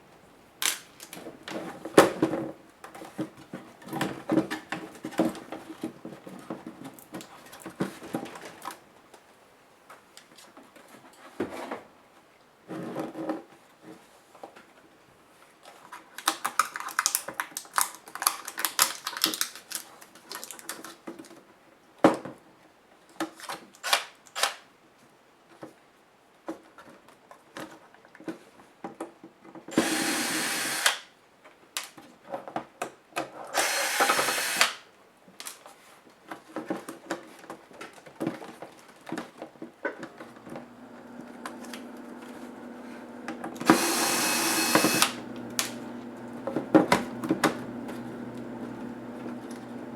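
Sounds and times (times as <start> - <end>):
small electric screwdriver whirring: 29.7 - 31.1, 33.5 - 34.8, 43.2 - 48.0.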